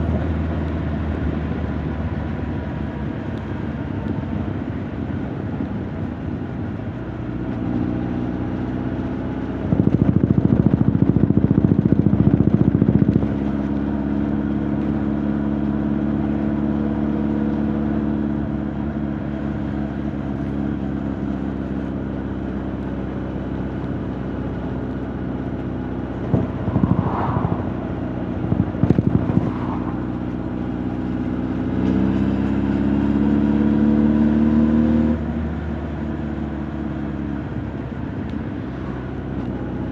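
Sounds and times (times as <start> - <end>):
motorcycle engine running: 1.8 - 27.2
brief higher sounds: 26.3 - 30.4.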